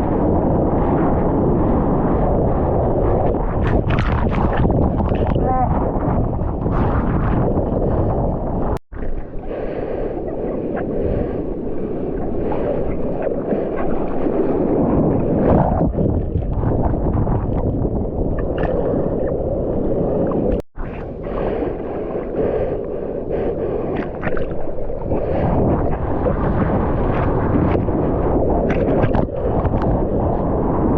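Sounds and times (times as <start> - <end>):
churning seawater and breaking surf: 0.0 - 30.9
water splashing: 8.9 - 22.8, 23.7 - 30.2.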